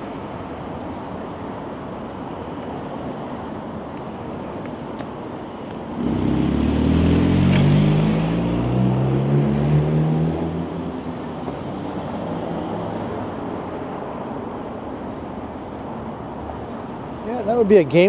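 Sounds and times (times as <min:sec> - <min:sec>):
background traffic: 0:00.0 - 0:18.0
vehicle passing close by: 0:05.8 - 0:13.6.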